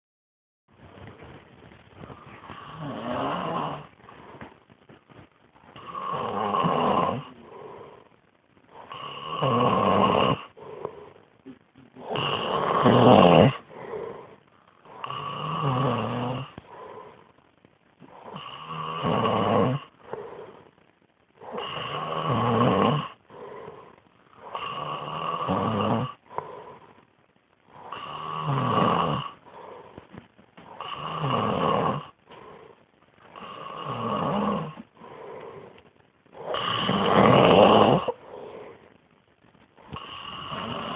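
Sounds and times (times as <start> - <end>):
soft breaths: 0.8 - 9.2, 10.4 - 18.7, 19.8 - 22.1, 23.1 - 25.1, 26.1 - 28.6, 29.2 - 40.9
child snoring loudly: 2.4 - 3.9, 5.8 - 7.8, 8.8 - 10.8, 12.0 - 14.1, 14.8 - 16.8, 18.1 - 20.5, 21.4 - 26.7, 27.7 - 29.7, 30.7 - 32.5, 33.4 - 35.5, 36.4 - 38.6, 39.9 - 40.9.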